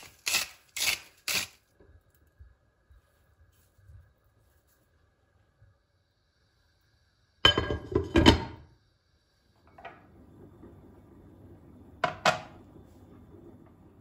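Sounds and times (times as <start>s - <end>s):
faint low hum: 1.6s - 14.0s
kitchen items knocking and clinking: 7.5s - 8.6s, 12.0s - 12.6s.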